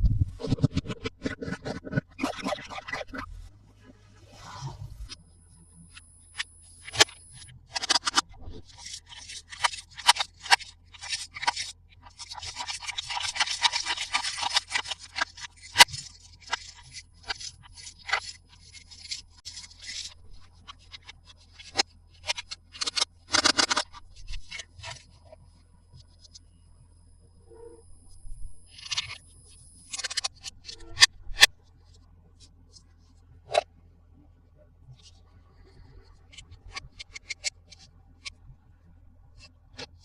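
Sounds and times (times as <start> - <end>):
plastic parts clicking and scraping: 0.0 - 3.5, 5.9 - 25.4, 27.6 - 31.5, 33.5 - 33.7, 35.0 - 38.4, 39.4 - 40.0.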